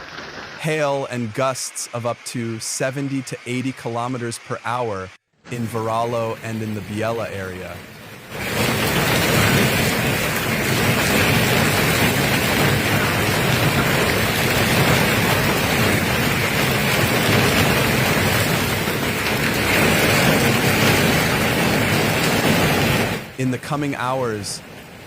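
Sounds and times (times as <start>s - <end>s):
hail and heavy rain pelting: 0.0s - 3.3s, 5.7s - 25.0s
narration: 0.6s - 7.9s, 23.3s - 24.6s.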